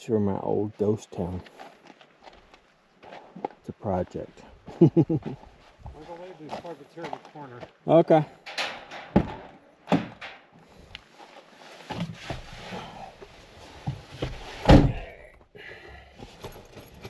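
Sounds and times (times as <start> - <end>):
loud thunk: 8.6 - 10.4, 14.6 - 15.1
scraping and shuffling: 8.7 - 14.7.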